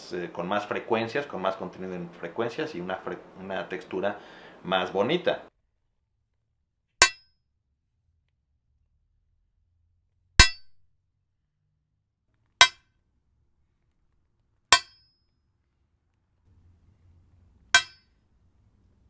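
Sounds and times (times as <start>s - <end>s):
sharp metallic clanks ringing: 10.4s - 10.7s, 14.8s - 15.1s, 17.8s - 18.1s.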